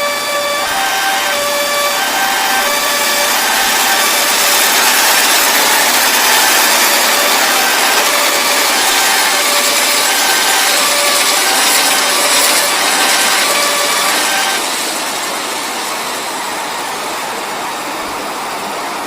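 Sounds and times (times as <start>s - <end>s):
level-crossing warning siren: 0.0s - 18.9s
train rushing past: 0.0s - 19.0s.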